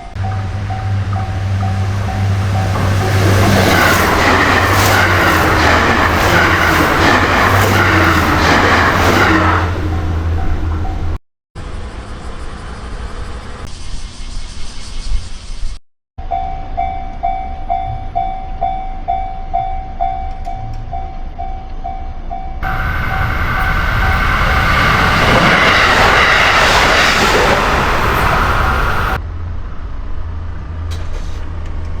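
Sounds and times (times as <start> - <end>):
train passing: 0.0 - 13.6, 16.2 - 30.6
level crossing alarm ringing: 16.2 - 29.2.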